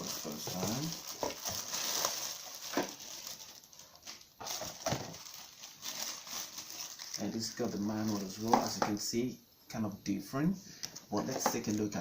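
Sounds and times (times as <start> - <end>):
packaging rustling: 0.0 - 8.9.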